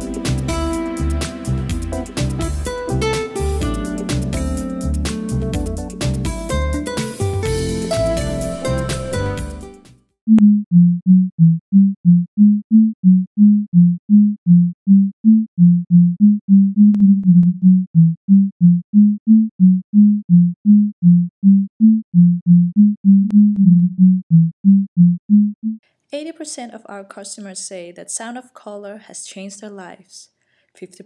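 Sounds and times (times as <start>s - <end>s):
short low synthesizer tones: 0.0s - 25.8s.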